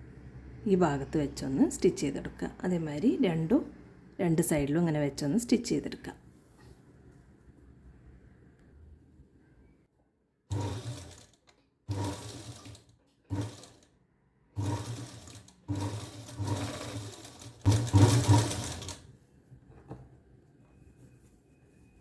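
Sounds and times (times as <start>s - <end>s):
sewing machine stitching: 10.5s - 13.9s, 14.6s - 19.1s.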